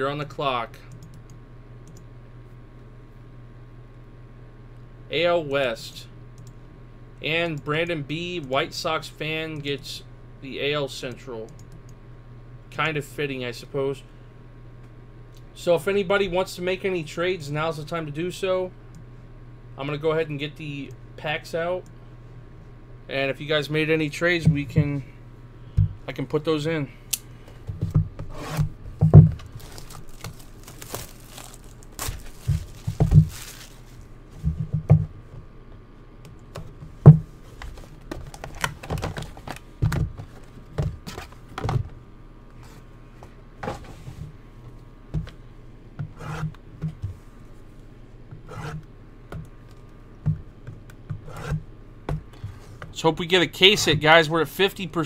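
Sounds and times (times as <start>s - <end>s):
card packs rustling: 29.4s - 34.1s, 37.5s - 41.5s.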